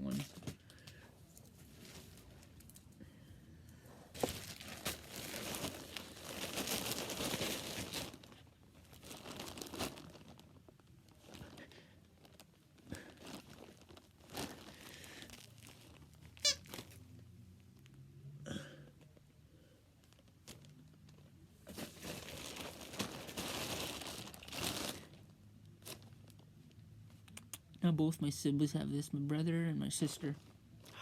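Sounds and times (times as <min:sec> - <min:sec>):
crinkling and rustling: 0:00.0 - 0:03.0, 0:03.9 - 0:18.1, 0:20.0 - 0:27.3.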